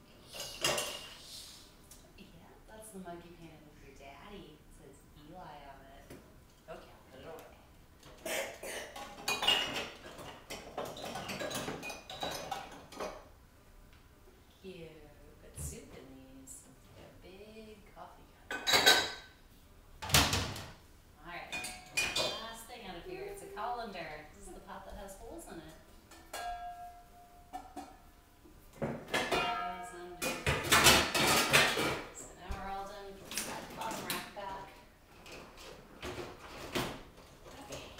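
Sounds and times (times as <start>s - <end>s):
dishes and cutlery clinking: 0.2s - 1.2s, 8.0s - 13.3s, 18.5s - 19.4s, 21.5s - 22.6s, 26.0s - 28.2s, 28.8s - 34.5s.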